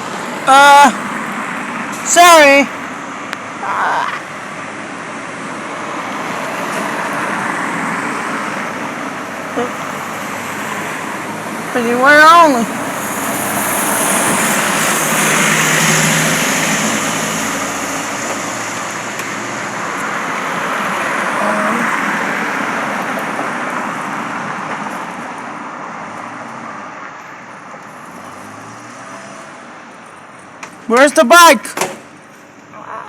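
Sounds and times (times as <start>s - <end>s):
road traffic passing: 0.0s - 33.0s.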